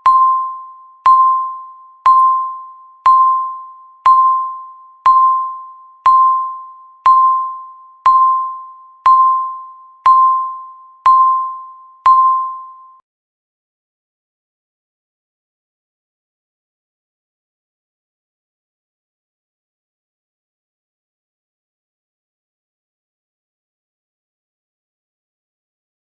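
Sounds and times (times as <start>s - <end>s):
countdown timer beeping: 0.0s - 13.0s.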